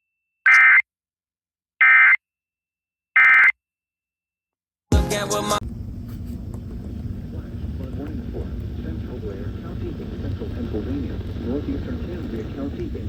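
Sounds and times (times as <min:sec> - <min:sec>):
loud burst of noise: 0:05.6 - 0:13.0.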